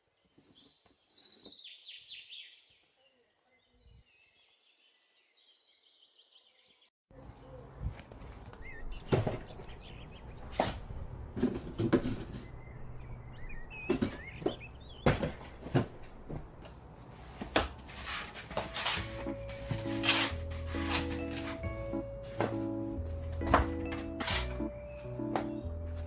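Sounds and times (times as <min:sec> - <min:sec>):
wooden knocks and clatters: 0:11.3 - 0:12.6, 0:13.8 - 0:16.8, 0:23.3 - 0:24.5
rubbing: 0:17.0 - 0:24.8
soft background music: 0:18.4 - 0:26.0.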